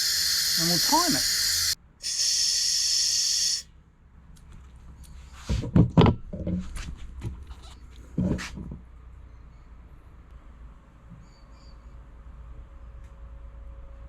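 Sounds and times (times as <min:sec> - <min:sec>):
air hissing from tyre valve: 0:00.0 - 0:03.6.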